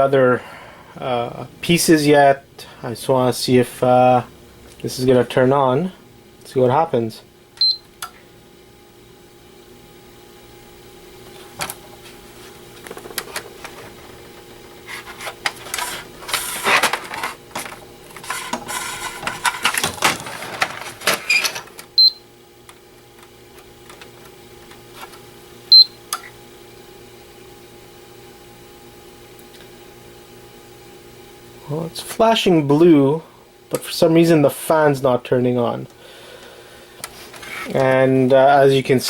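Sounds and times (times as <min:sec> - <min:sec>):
faint steady hum: 0:00.0 - 0:39.0
clicks and clatter of handling: 0:15.1 - 0:21.9.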